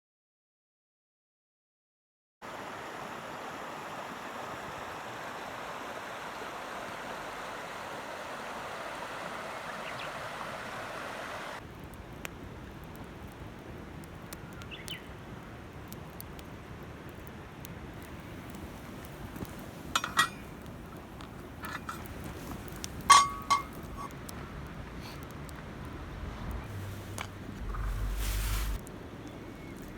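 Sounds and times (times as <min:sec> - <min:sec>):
rushing outdoor noise: 0:02.4 - 0:12.8, 0:16.5 - 0:29.9
ringing metal clinks: 0:20.0 - 0:20.5, 0:23.1 - 0:24.1.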